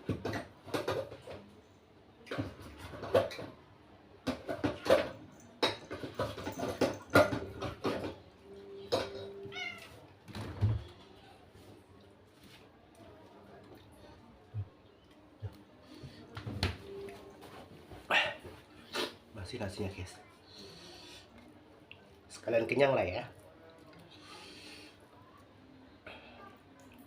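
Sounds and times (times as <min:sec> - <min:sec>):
clicks and knocks of eating: 0:00.0 - 0:01.6, 0:02.2 - 0:11.0, 0:12.3 - 0:19.2
cat meowing: 0:09.4 - 0:10.0.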